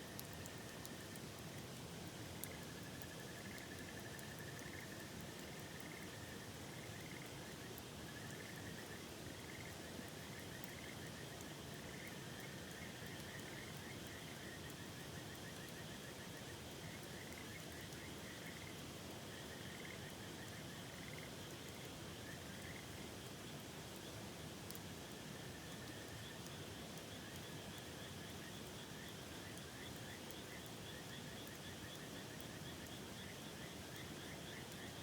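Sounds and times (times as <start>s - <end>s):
faint ticks: 0.1s - 35.0s.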